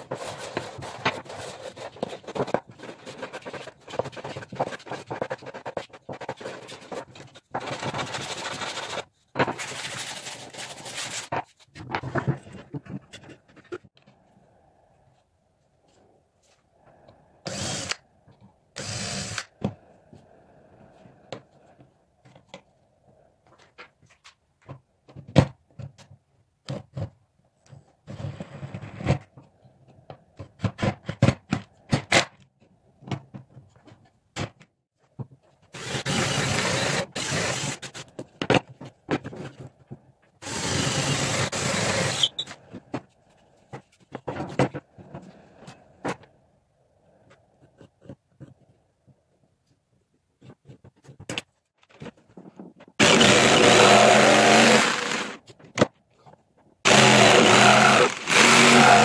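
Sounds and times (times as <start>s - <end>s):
power drill running: 53.0s - 55.4s, 56.9s - 59.0s.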